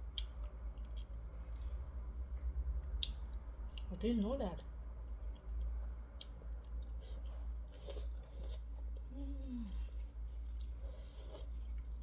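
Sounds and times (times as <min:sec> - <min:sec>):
steady low hum: 0:00.0 - 0:12.0
person chewing: 0:06.2 - 0:12.0.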